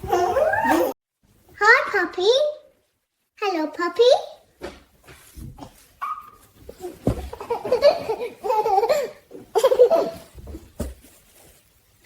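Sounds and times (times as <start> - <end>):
baby laughing: 7.0 - 10.3.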